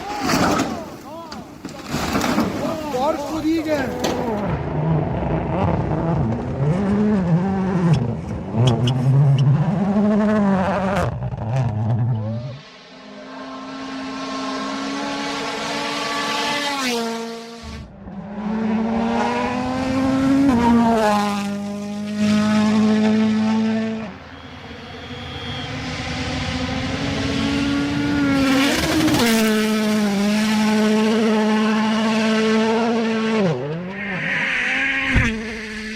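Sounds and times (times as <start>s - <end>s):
vehicle engine revving: 3.9s - 35.9s
steady drone: 33.9s - 35.9s.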